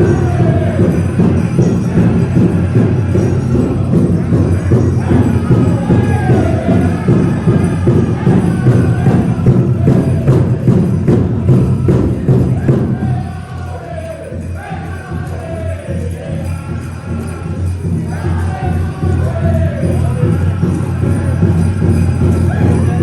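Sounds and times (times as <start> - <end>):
high-pitched group singing: 0.0 - 23.0
large drum beaten fast: 0.0 - 23.0.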